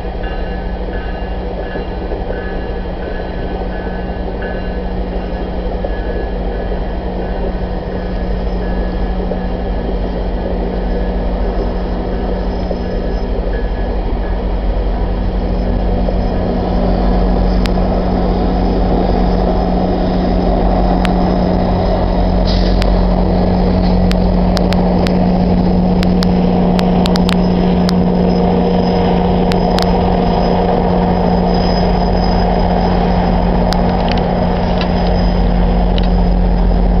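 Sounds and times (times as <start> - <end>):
diesel train low hum: 0.0 - 37.0
sharp clicks and clanks: 26.0 - 28.0.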